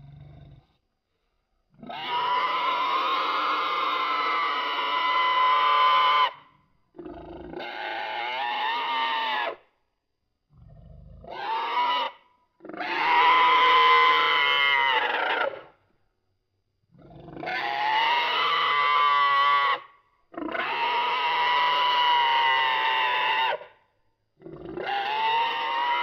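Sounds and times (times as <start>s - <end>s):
wavering creature squeals: 11.3s - 15.7s, 17.4s - 23.8s, 24.7s - 26.0s.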